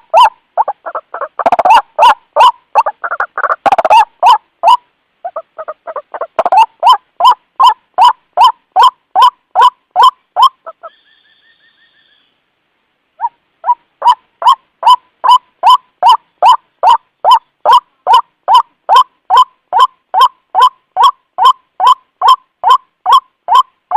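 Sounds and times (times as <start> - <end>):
bird call of harsh notes: 0.1 - 12.4
faint high trill: 10.8 - 12.4.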